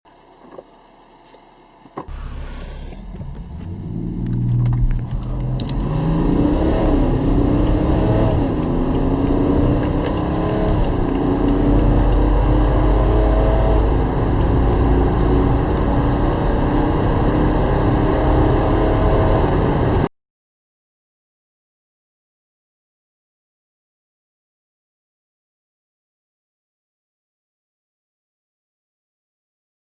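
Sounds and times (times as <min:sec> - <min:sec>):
diesel engine accelerating hard: 0:02.1 - 0:20.1.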